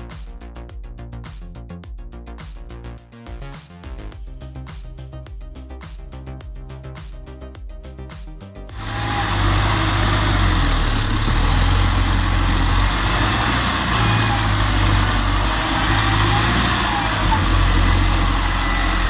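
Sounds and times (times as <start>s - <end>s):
diesel engine running: 8.7s - 19.0s.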